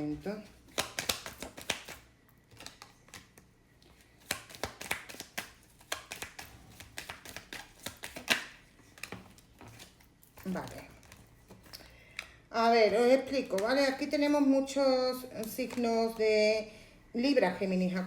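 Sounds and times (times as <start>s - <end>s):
cards snapping and clicking: 0.7s - 3.4s, 4.2s - 10.0s.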